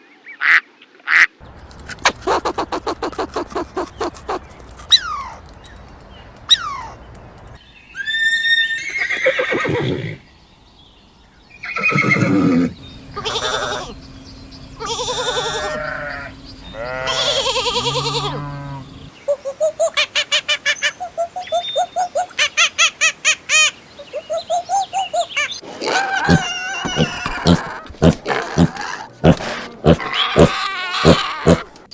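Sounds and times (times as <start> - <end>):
goat bleating: 11.7 - 14.0, 14.8 - 19.0, 26.0 - 31.8.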